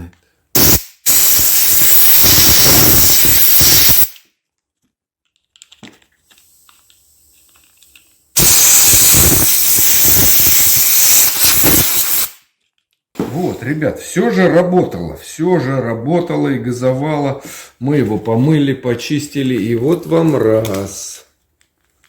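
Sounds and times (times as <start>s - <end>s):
compressed air blow gun hissing: 0.6s - 4.2s, 8.4s - 12.4s.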